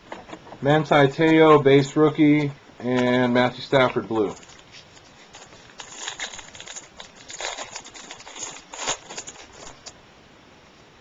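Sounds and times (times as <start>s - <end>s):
cards rustling and clicking: 0.1s - 10.0s.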